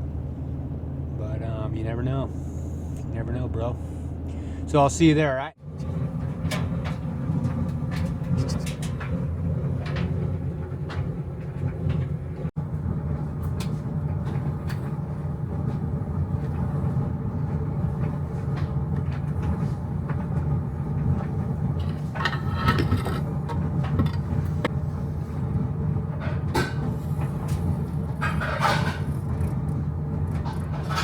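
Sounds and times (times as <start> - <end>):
vehicle road and engine rumble: 0.0 - 31.0
faint clicks and rattles: 26.2 - 31.0.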